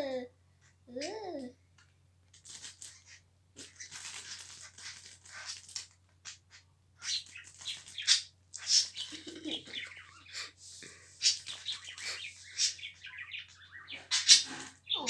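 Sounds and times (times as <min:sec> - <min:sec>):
rustling and scratching: 0:02.2 - 0:13.1, 0:14.0 - 0:15.0
pet bird chirping: 0:02.6 - 0:15.0.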